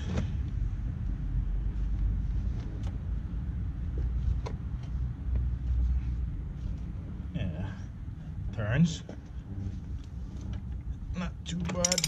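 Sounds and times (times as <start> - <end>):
steady low rumble: 0.0 - 12.0
breaker bar clicks: 11.7 - 12.0.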